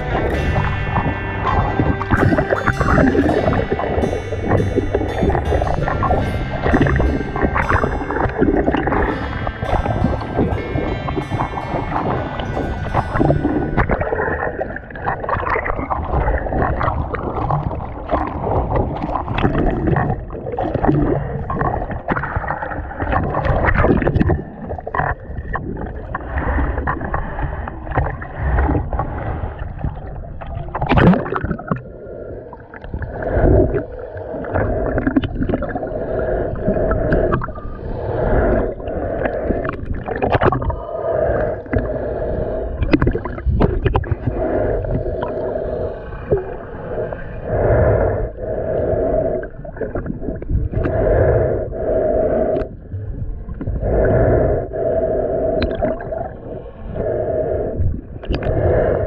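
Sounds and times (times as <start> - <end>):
underwater knocks: 0.0 - 26.2, 39.2 - 40.8
muffled underwater water sloshing: 0.0 - 59.0.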